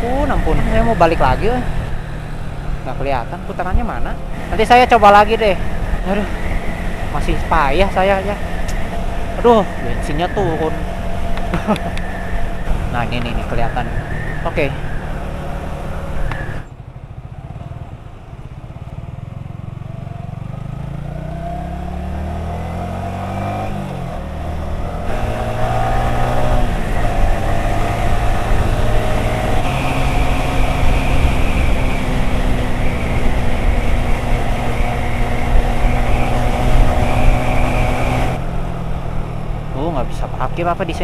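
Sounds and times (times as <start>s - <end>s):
loud wind rush: 0.0s - 16.7s, 23.2s - 38.5s
motorcycle engine accelerating: 0.0s - 41.0s.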